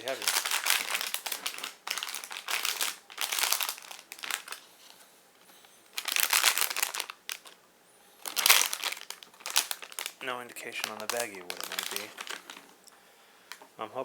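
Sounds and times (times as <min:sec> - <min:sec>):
plastic packaging crinkling: 0:00.0 - 0:04.9, 0:05.8 - 0:07.6, 0:08.2 - 0:13.6.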